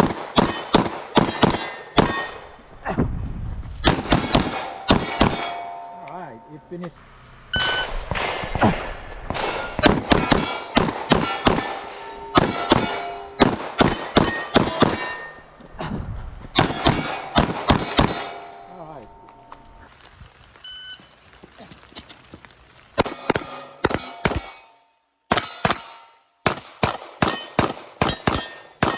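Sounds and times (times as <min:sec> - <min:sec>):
pistol shots: 0:00.0 - 0:02.4, 0:03.8 - 0:05.9, 0:07.6 - 0:15.4, 0:16.6 - 0:18.8, 0:23.0 - 0:24.6, 0:25.3 - 0:28.9
metallic clang of steel plates: 0:04.2 - 0:06.5, 0:09.4 - 0:15.5, 0:23.0 - 0:26.2
short beep: 0:07.5 - 0:08.0, 0:20.6 - 0:21.0.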